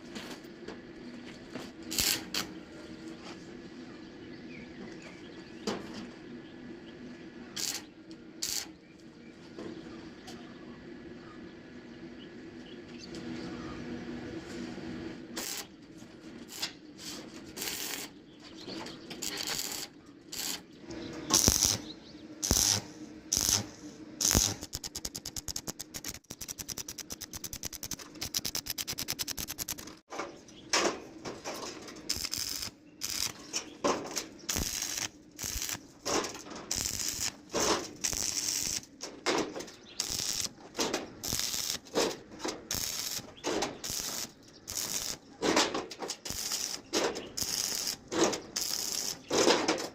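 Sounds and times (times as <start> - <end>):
fast run of ticks: 23.4 - 30.0, 34.5 - 35.8, 36.7 - 37.4, 40.0 - 40.5, 42.7 - 45.2.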